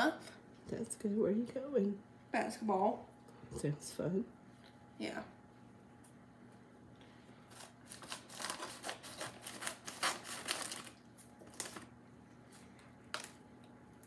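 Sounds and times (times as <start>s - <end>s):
packaging crinkling: 7.5s - 13.5s.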